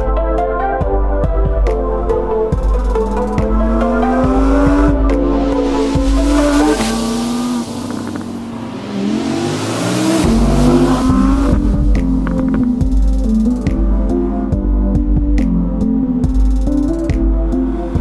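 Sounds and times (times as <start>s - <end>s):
sports car accelerating hard: 2.9s - 13.0s.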